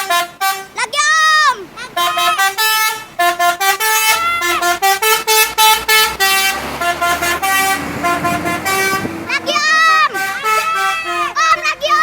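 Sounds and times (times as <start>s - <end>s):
bus engine running: 0.0s - 12.0s
musical air horn notes: 2.0s - 11.4s.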